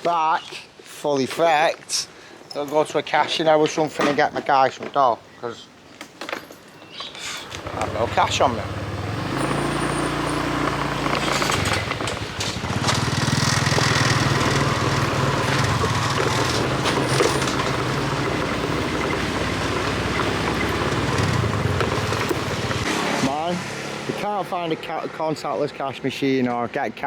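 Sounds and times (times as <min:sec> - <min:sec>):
wind and road noise: 0:00.0 - 0:27.0
small motorcycle engine running: 0:07.5 - 0:24.2.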